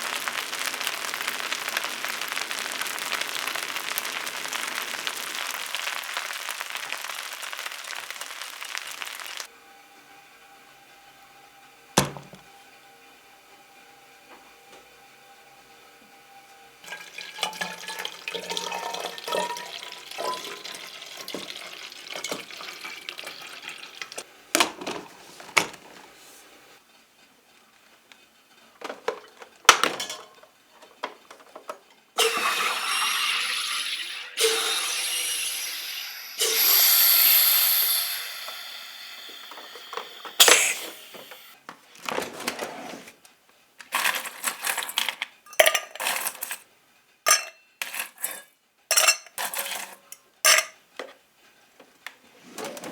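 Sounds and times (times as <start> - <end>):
water running: 0.0 - 9.5, 16.8 - 24.3, 32.2 - 41.6
dishes and utensils clinking: 16.9 - 25.7, 28.8 - 33.5, 43.9 - 46.7, 47.3 - 51.2.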